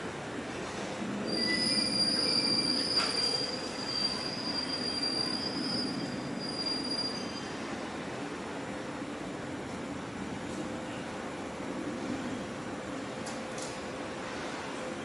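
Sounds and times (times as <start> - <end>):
machine high-pitched squeal: 1.3 - 7.6.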